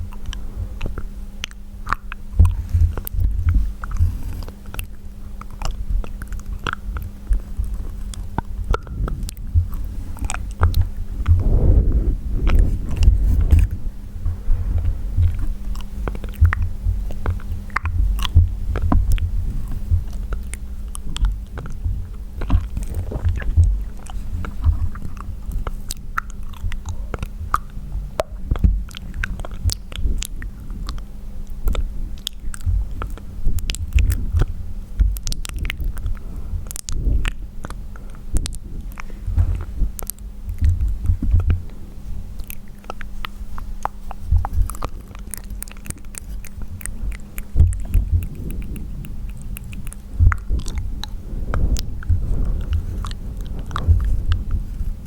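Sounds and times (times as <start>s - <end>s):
wet mouth clicks and smacks: 0.0s - 11.6s, 15.2s - 41.8s, 42.4s - 55.0s
low rumble: 2.4s - 31.0s, 44.3s - 55.0s.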